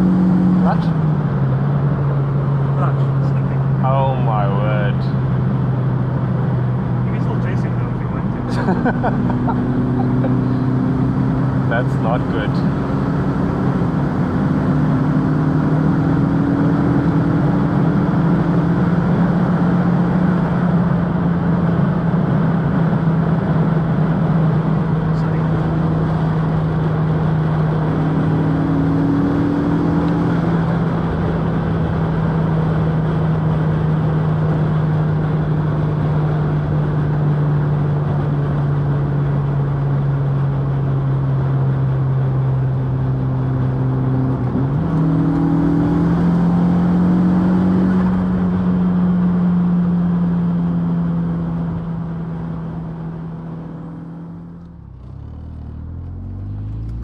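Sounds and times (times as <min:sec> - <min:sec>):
car engine revving from inside: 0:42.1 - 0:57.0.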